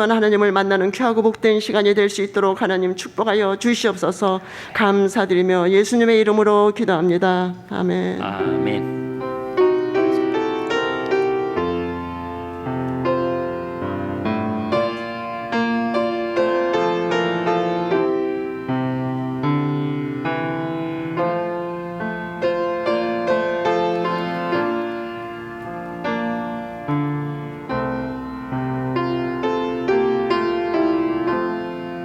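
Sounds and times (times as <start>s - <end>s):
slow gentle piano piece: 7.5s - 32.0s.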